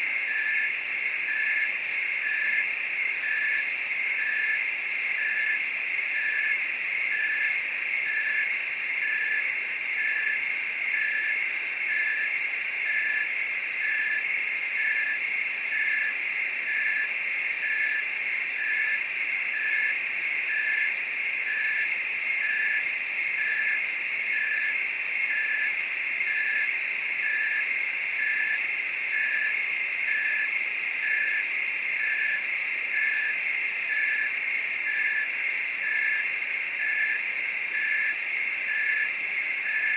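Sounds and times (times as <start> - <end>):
crickets and frogs trilling: 0.0 - 39.9.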